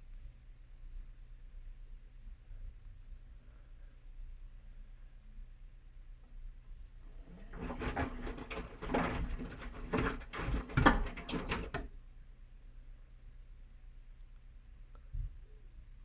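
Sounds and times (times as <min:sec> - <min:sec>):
washing machine drum churning: 0:07.0 - 0:11.9.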